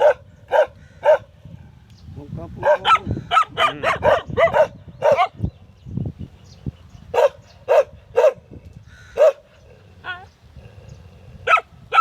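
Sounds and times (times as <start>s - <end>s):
dog barking: 0.0s - 1.3s, 2.6s - 5.4s, 7.1s - 8.4s, 9.2s - 9.4s, 11.4s - 12.0s.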